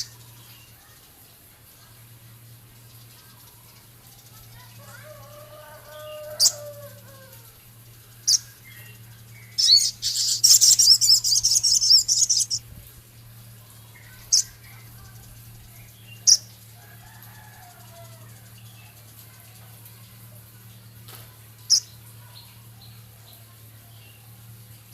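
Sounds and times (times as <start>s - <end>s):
bird chattering: 0.0s - 1.0s, 2.8s - 12.6s, 13.8s - 16.7s
steady low hum: 0.0s - 24.9s.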